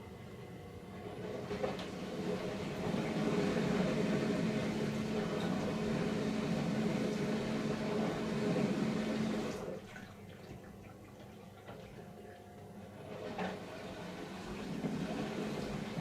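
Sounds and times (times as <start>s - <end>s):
dishwasher pump hum: 0.0s - 16.0s
water churning: 1.4s - 16.0s
water dripping and trickling: 9.8s - 12.1s.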